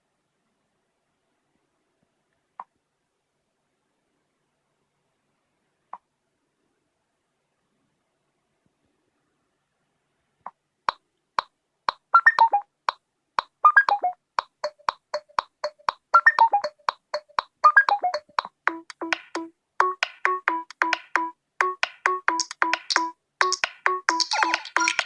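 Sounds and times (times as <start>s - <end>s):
phone ringtone: 17.6s - 25.0s.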